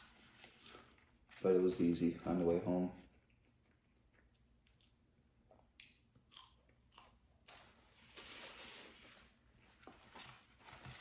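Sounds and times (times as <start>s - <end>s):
person chewing crunchy food: 5.8s - 7.7s.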